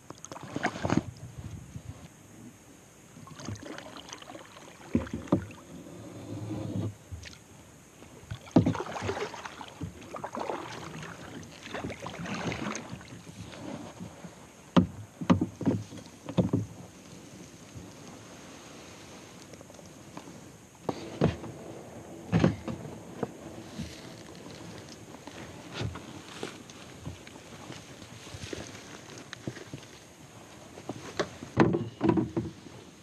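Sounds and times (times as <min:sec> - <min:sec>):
paddle strokes in water: 0:00.0 - 0:02.0, 0:03.2 - 0:07.4, 0:08.0 - 0:33.0
paddle knocking against hull: 0:04.8 - 0:05.6, 0:08.3 - 0:13.2, 0:14.7 - 0:16.8, 0:31.2 - 0:32.6.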